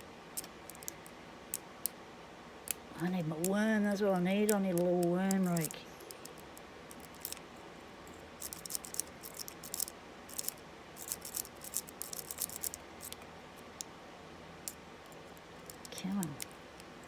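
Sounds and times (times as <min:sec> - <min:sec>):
lock picks clicking in padlock: 0:04.5 - 0:07.4.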